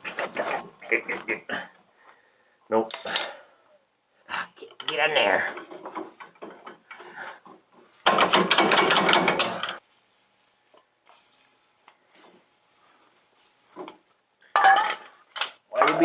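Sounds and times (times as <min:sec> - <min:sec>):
metallic clicking and rattling: 0:04.7 - 0:09.8.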